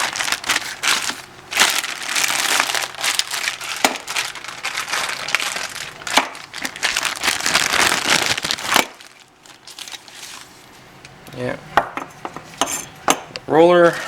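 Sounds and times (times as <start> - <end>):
packaging crinkling and rustling: 0.0 - 10.7.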